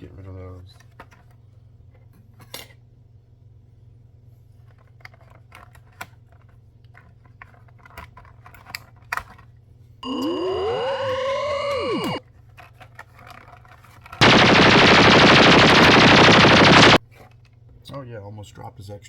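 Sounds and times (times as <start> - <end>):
loud rising pitched sound: 10.0 - 12.2, 14.2 - 17.0.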